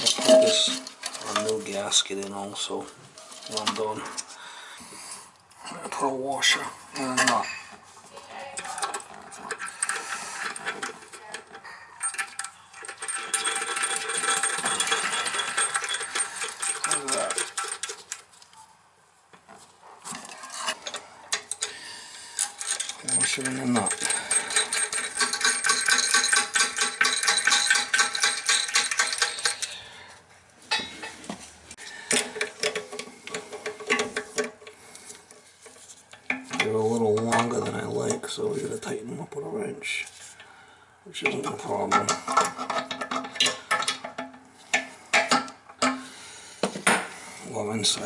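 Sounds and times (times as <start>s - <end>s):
metal clinks of nut and washer: 22.6s - 29.7s.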